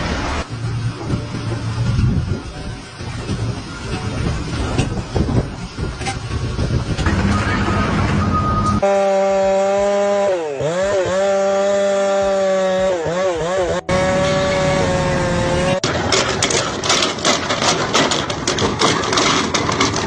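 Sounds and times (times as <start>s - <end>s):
dense choppy clattering: 15.8s - 20.0s.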